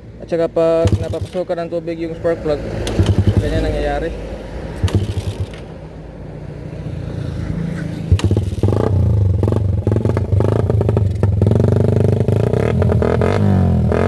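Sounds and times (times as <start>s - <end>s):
motorcycle engine revving: 0.7s - 14.0s.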